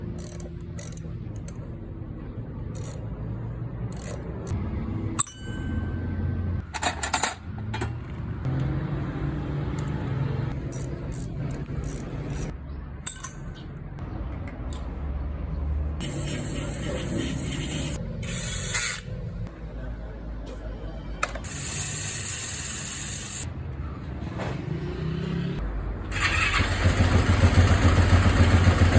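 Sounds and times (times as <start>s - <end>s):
metal tools clinking: 6.6s - 8.0s, 10.7s - 13.6s.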